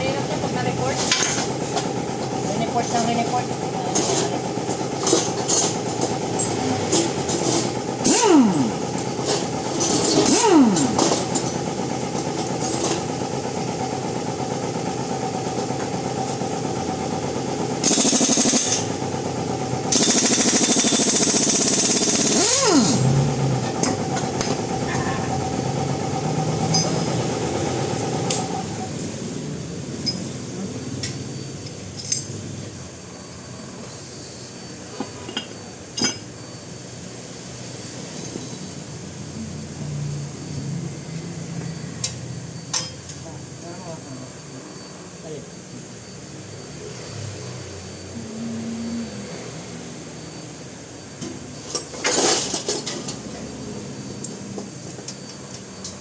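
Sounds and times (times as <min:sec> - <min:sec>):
machine running steadily: 0:00.0 - 0:48.3
spinning tool winding down: 0:08.0 - 0:09.0, 0:10.0 - 0:11.6, 0:17.8 - 0:18.9, 0:19.9 - 0:24.0.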